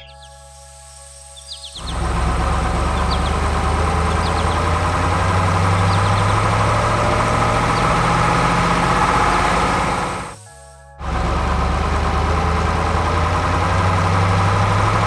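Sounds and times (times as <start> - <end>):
birds chirping faintly: 0.0 - 10.7
diesel engine running: 1.8 - 15.0.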